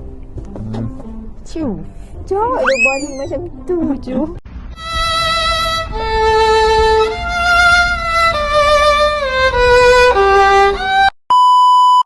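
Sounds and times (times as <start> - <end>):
violin playing slow held notes: 4.8 - 11.1.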